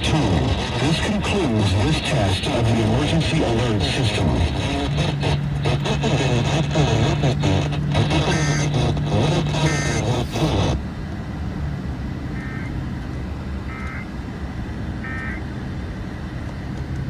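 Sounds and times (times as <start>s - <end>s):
loud dense data burst: 0.0s - 10.8s.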